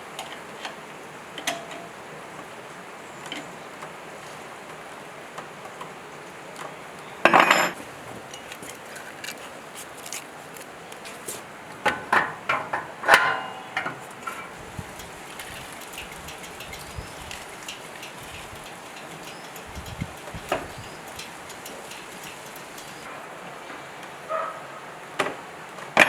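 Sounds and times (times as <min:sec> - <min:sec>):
metal tools being handled: 0:07.3 - 0:23.1
metal clatter: 0:11.9 - 0:23.1
sharp metallic clanks: 0:11.9 - 0:23.1.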